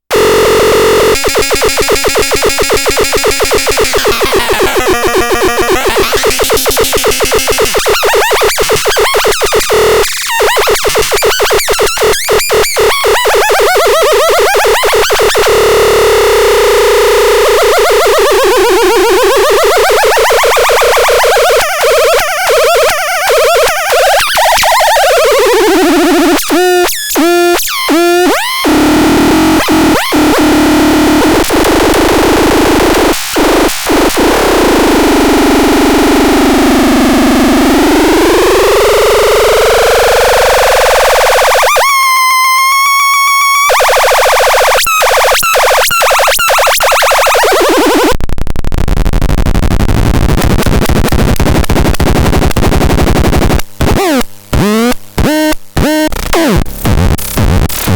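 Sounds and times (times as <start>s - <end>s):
stuttering clicks: 0.1s - 15.6s, 43.7s - 57.9s
harsh synthesizer noise with pitch sweeps: 0.1s - 48.2s, 48.8s - 57.9s.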